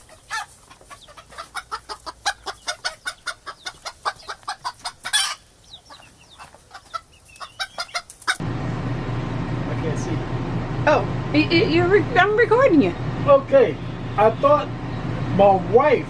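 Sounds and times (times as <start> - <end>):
hen clucking: 0.0 - 8.4
hen squawking: 0.0 - 8.4.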